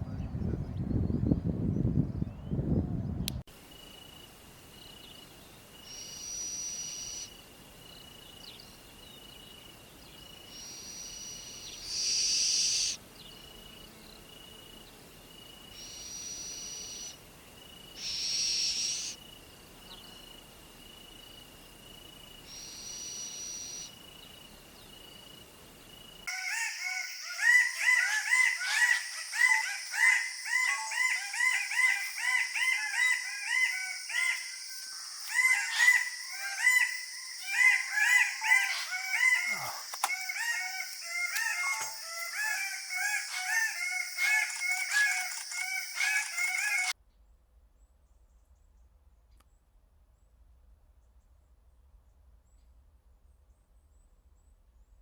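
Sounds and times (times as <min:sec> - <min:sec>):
many birds chirping: 0:26.3 - 0:47.0
short higher bird calls: 0:35.3 - 0:47.0.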